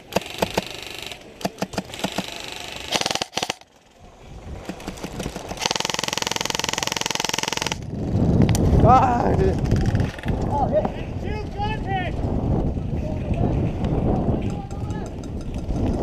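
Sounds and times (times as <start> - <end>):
airsoft guns firing: 0.0 - 3.7, 4.6 - 7.8.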